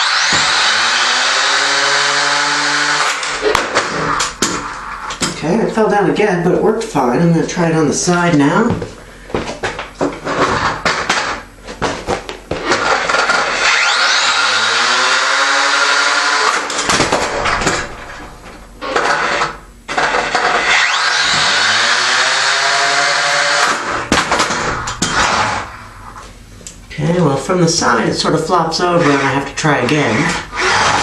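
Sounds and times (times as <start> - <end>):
electric motors whining: 0.0 - 5.2, 12.6 - 26.3, 30.1 - 31.0.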